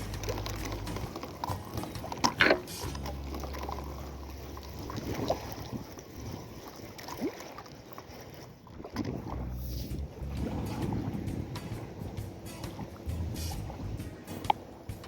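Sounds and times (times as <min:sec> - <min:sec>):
motorboat engine humming: 0:00.0 - 0:15.0
wind on microphone: 0:04.7 - 0:06.7, 0:08.7 - 0:14.6.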